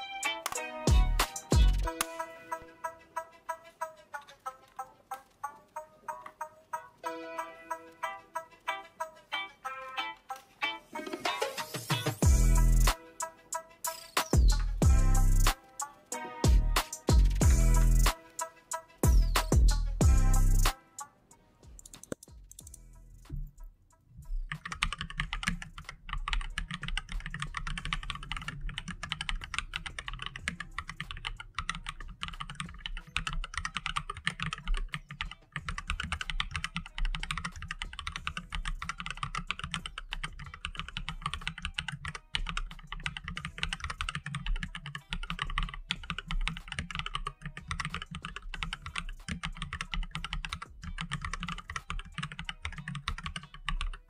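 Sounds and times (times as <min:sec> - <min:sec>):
fast typing on mechanical keyboard: 0:24.4 - 0:54.0.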